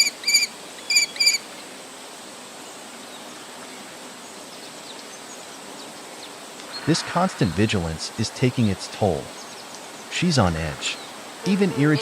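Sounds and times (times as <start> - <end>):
kestrel alarm calls: 0.0 - 1.4
faint steady hiss: 0.0 - 12.0.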